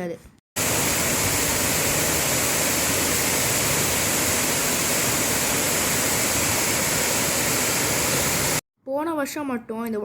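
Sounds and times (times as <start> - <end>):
waterfall rushing: 0.6 - 8.6.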